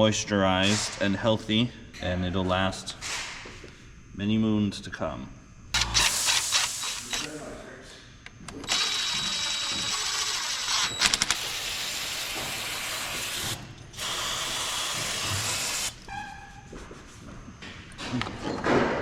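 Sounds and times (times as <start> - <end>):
power tool running: 5.7 - 7.6, 8.5 - 16.0.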